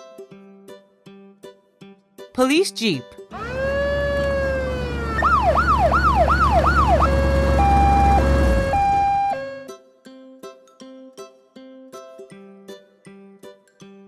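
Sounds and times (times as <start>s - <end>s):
low engine rumble: 3.4s - 9.6s
police siren: 3.4s - 9.7s.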